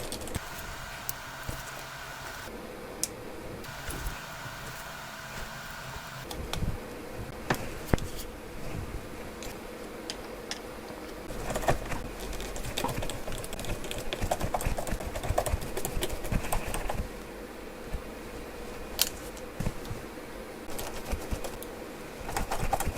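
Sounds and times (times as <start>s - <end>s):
faint steady hum: 0.3s - 13.6s.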